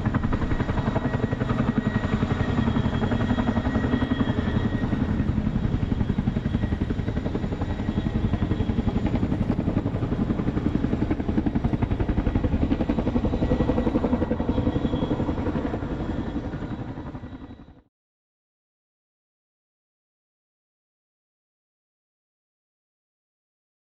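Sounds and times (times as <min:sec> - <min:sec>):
helicopter rotor beat: 0:00.0 - 0:17.9.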